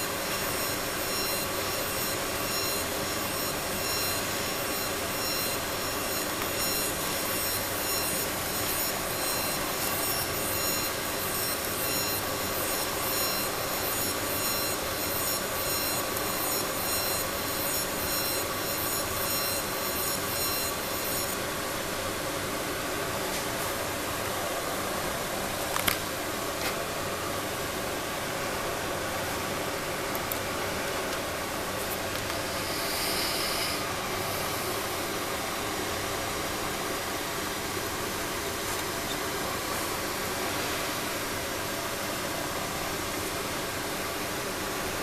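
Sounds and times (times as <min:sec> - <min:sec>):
laser engraver hissing and whining: 0:00.0 - 0:45.0.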